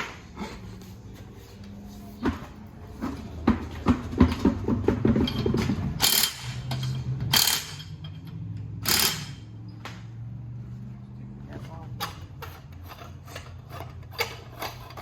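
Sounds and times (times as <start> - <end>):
air impact wrench bursts: 6.0 - 7.9, 8.8 - 9.4
ratchet clicking: 6.0 - 9.4.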